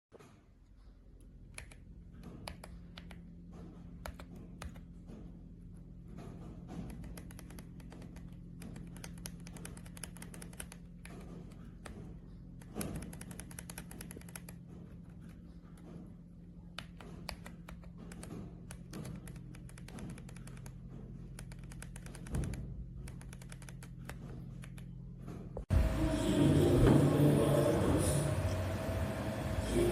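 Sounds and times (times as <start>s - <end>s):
mechanical keyboard typing: 1.5s - 1.8s, 2.4s - 3.2s, 6.9s - 11.2s, 12.6s - 15.2s, 16.8s - 20.8s, 21.4s - 24.9s.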